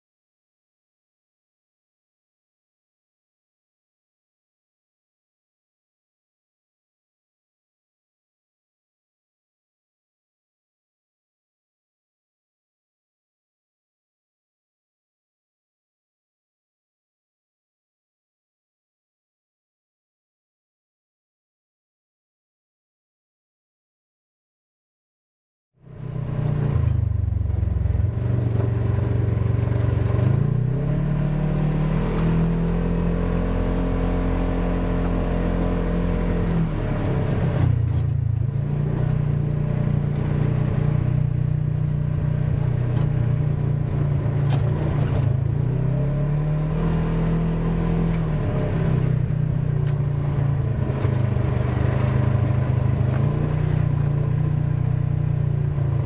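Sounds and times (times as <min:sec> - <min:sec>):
off-road vehicle engine revving: 0:25.8 - 0:56.0.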